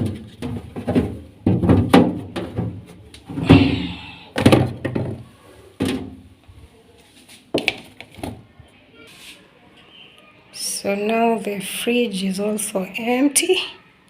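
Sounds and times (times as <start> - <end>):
containers knocking on shelves: 0.0 - 6.2.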